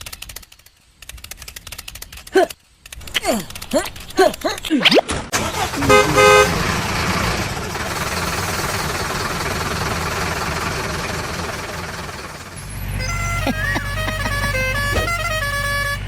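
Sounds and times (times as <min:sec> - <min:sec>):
engine running: 0:05.3 - 0:16.0
vehicle horn beeping: 0:05.5 - 0:06.9, 0:12.9 - 0:16.0
deep steady hum: 0:05.6 - 0:07.6, 0:12.6 - 0:16.0.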